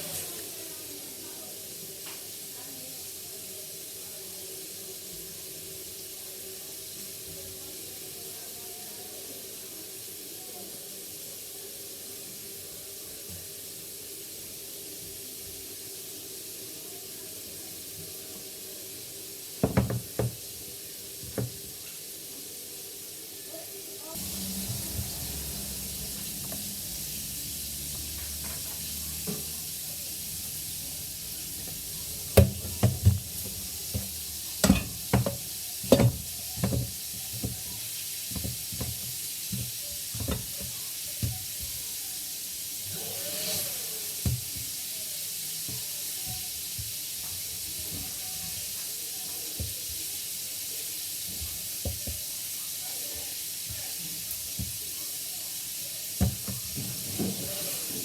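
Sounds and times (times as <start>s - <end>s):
hot oil sizzling: 0.0s - 58.0s.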